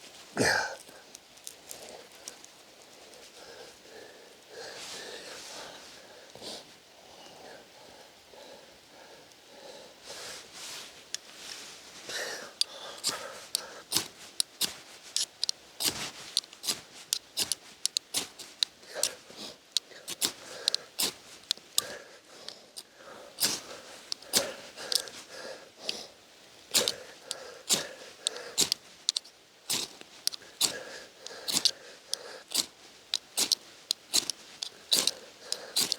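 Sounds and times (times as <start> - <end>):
dry wood snapping and crackling: 32.5 - 35.9.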